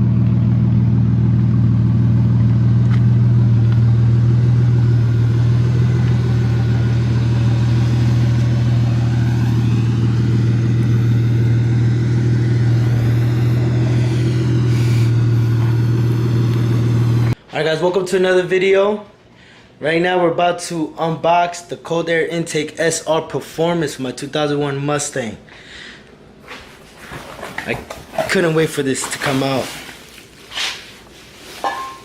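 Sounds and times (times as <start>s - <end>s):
car engine droning steadily: 0.0s - 17.4s.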